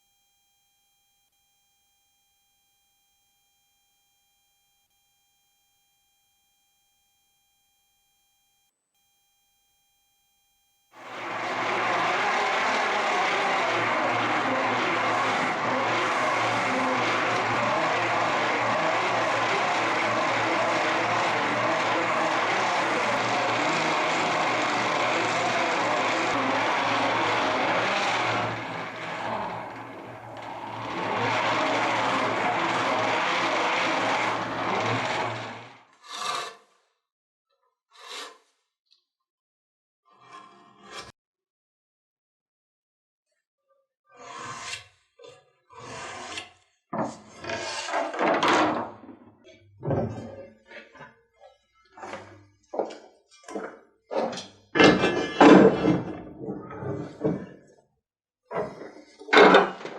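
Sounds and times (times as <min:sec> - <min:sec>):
electric power tool running: 0:00.0 - 0:35.8.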